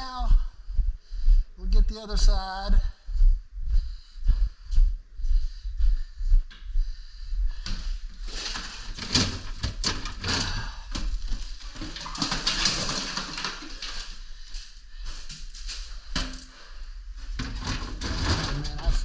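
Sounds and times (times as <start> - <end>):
containers clattering and rustling: 7.7 - 19.0.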